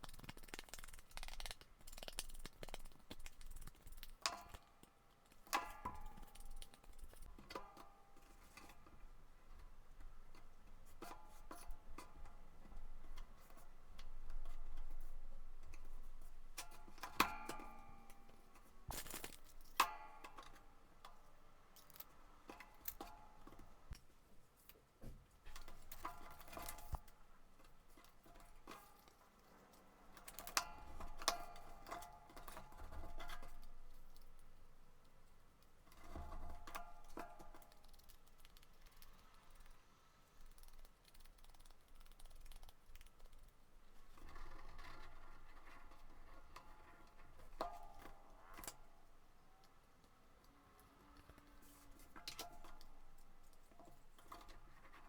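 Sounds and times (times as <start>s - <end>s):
paper rustling and folding: 18.9s - 19.6s.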